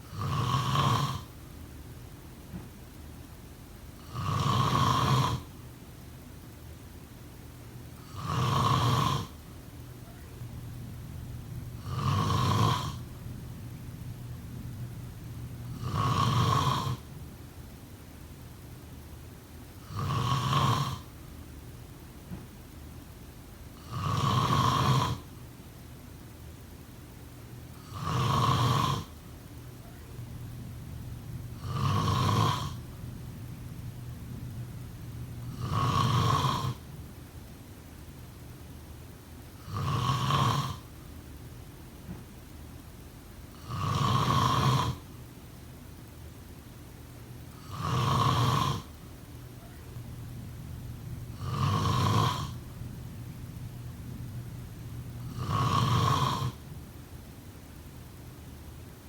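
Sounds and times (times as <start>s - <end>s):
loud snoring: 0.0s - 1.3s, 4.0s - 5.5s, 8.0s - 9.4s, 10.4s - 17.1s, 19.8s - 21.1s, 23.8s - 25.3s, 27.8s - 29.2s, 30.2s - 37.0s, 39.6s - 40.9s, 43.5s - 45.1s, 47.6s - 48.9s, 49.9s - 56.8s
quiet breathing: 8.0s - 17.3s, 27.7s - 37.2s, 47.5s - 57.3s.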